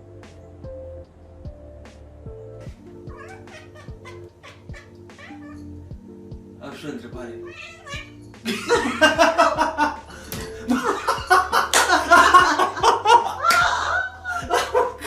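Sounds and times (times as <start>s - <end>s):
person laughing loudly: 8.5s - 15.0s.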